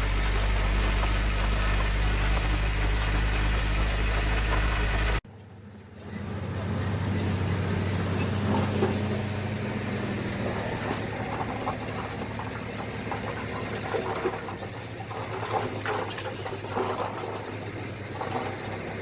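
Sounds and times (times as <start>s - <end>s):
diesel engine running: 0.0s - 19.0s.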